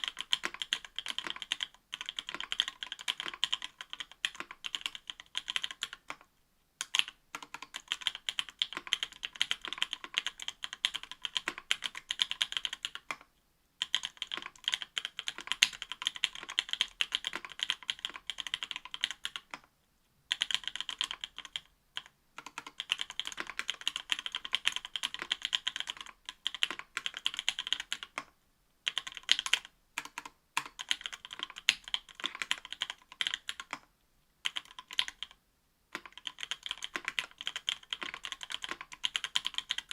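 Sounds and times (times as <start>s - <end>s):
mechanical keyboard clacks: 36.0s - 39.9s.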